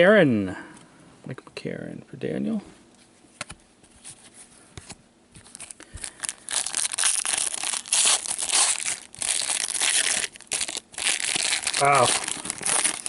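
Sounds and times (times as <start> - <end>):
wrapper tearing and crinkling: 5.4 - 13.0.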